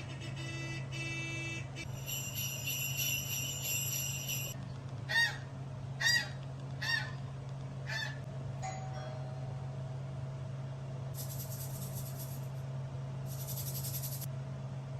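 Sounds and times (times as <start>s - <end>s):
pulsing high tone: 0.0s - 4.6s
jingling bells: 1.8s - 4.6s.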